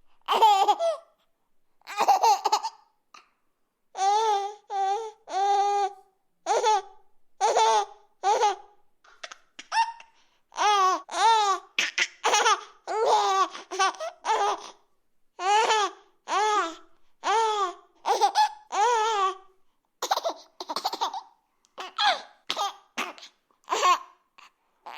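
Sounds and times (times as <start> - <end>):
baby laughing: 0.3 - 1.1, 1.9 - 2.9, 7.4 - 14.6, 18.1 - 19.3, 20.0 - 24.9.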